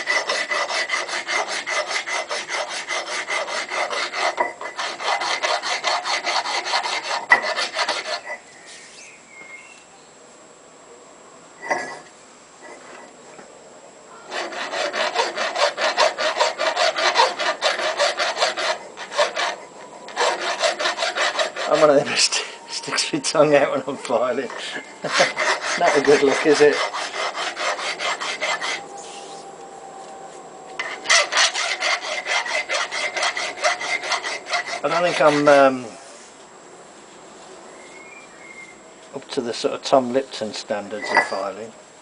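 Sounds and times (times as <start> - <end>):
file rasping on steel: 0.0 - 8.4, 14.3 - 22.2, 24.5 - 28.8, 30.8 - 35.7.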